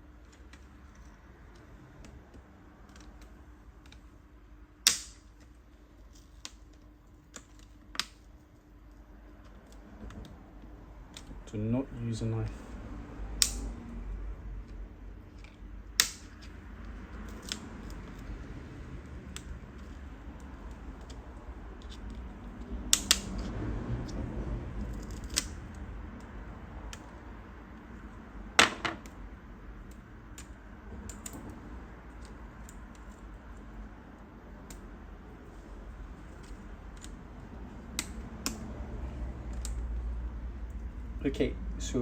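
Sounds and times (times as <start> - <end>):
plastic clicks and snaps: 13.4 - 13.7.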